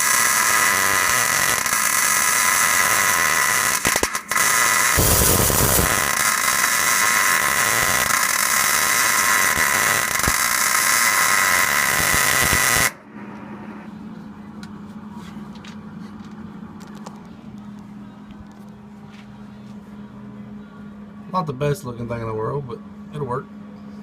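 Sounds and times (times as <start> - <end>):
welder hissing and buzzing: 0.0 - 13.0
faint low hum: 13.0 - 24.0.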